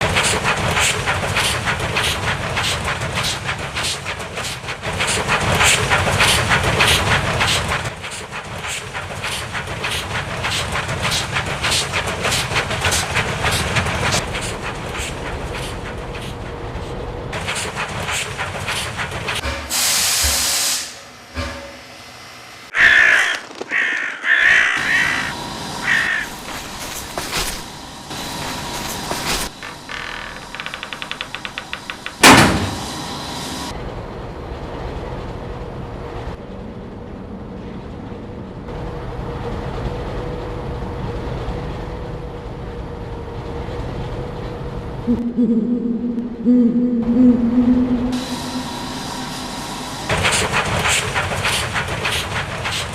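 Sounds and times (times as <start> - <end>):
steam engine chuffing and hissing: 0.0 - 21.9, 24.8 - 33.8, 48.1 - 52.9
loud blast of escaping steam: 19.7 - 21.0.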